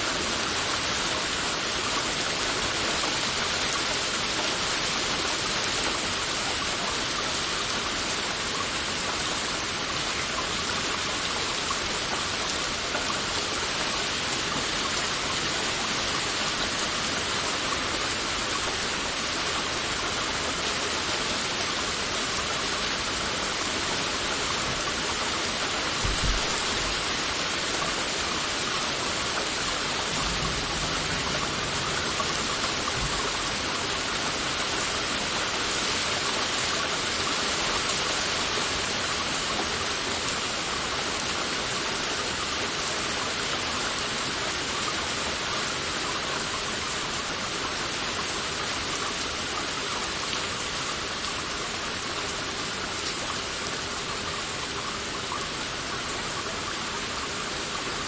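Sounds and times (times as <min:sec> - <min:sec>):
heavy rain falling: 0:00.0 - 0:58.0
low thud: 0:26.0 - 0:26.6.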